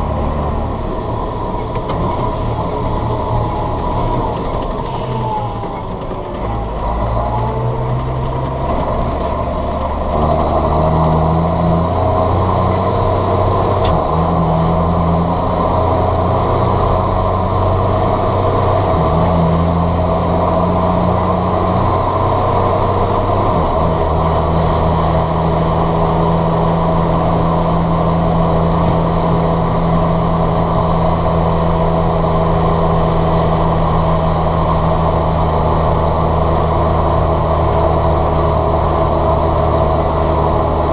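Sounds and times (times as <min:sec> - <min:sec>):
diesel tractor engine running: 0:00.0 - 0:40.9.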